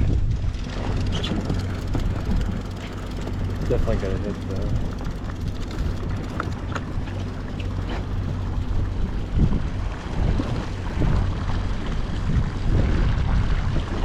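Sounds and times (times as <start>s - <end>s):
boat engine droning: 0.0s - 14.0s
wind on microphone: 0.0s - 14.0s.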